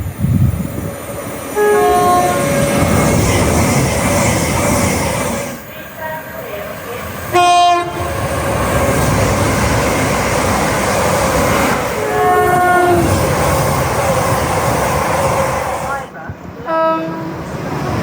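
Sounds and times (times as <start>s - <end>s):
train rumbling at speed: 0.0s - 18.0s
two-note train horn: 1.6s - 2.8s, 7.3s - 8.0s, 12.0s - 13.1s
train horn blast: 1.6s - 2.9s, 7.3s - 8.0s, 11.9s - 13.1s, 16.6s - 17.4s.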